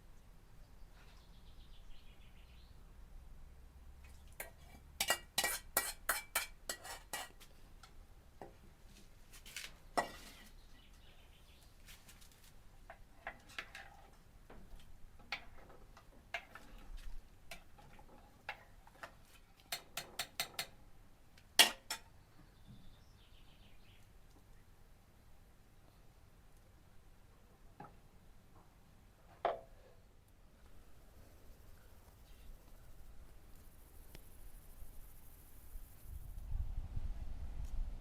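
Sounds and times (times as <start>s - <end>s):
dishes and utensils clinking: 4.4s - 7.4s.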